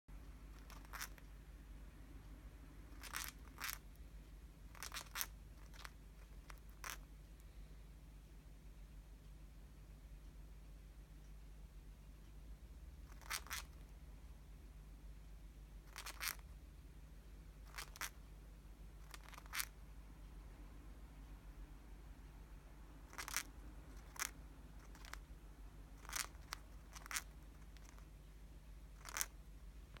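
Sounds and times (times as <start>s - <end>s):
bird grinding its beak: 0.6s - 1.2s, 3.0s - 3.8s, 4.7s - 5.9s, 15.9s - 16.4s, 23.1s - 25.2s, 26.0s - 28.0s.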